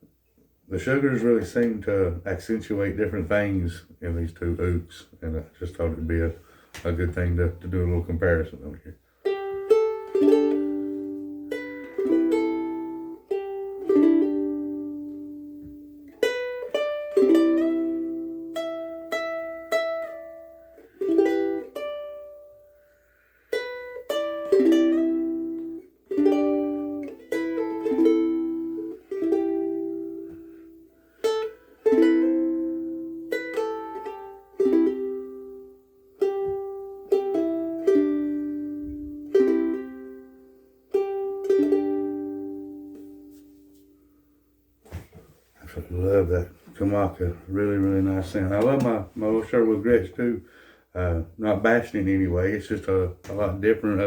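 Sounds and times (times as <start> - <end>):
ukulele playing slow tune: 9.0 - 45.5.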